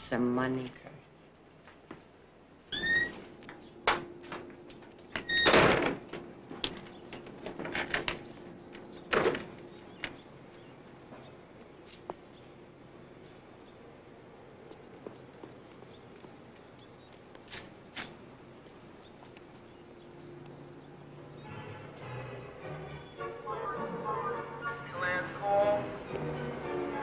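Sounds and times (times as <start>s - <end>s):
short squeak: 2.7s - 3.2s.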